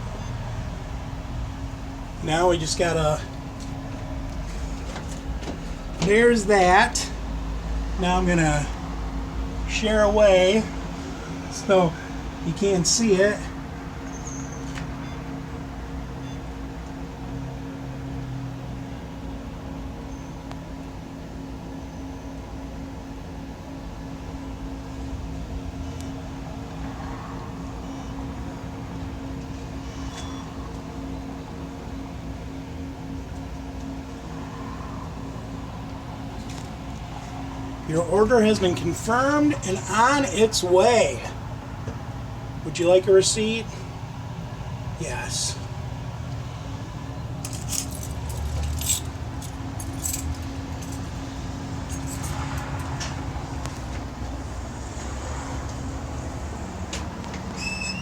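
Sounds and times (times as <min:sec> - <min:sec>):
steady low hum: 0:00.0 - 0:57.5
car engine idling: 0:34.0 - 0:55.0
metallic jingling clicks: 0:47.4 - 0:51.1.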